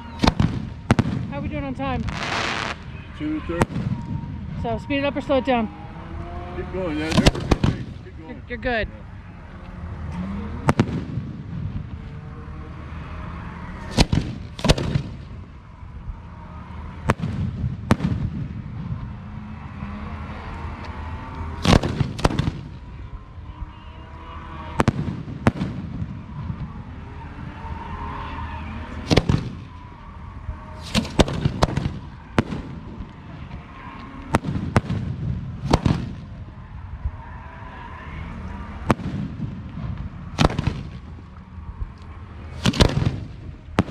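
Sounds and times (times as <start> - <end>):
fireworks booming: 0.0 - 5.6, 7.0 - 8.3, 10.5 - 12.1, 13.8 - 19.5, 21.0 - 23.8, 24.6 - 26.9, 28.7 - 37.2, 38.7 - 41.9, 42.6 - 43.9
steady low rumble: 0.0 - 43.9.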